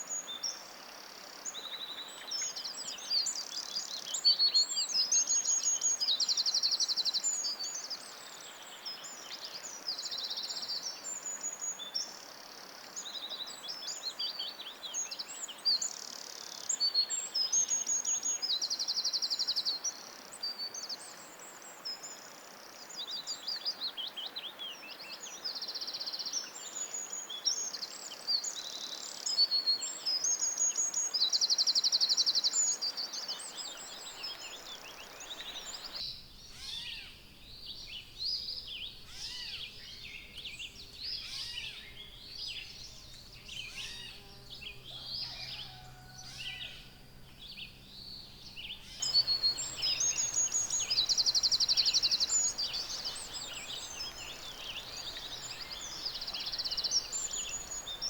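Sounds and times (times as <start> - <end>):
background hiss: 0.0 - 45.0, 46.4 - 58.0
songbirds singing: 13.0 - 58.0
buzzy bird trills: 49.0 - 58.0.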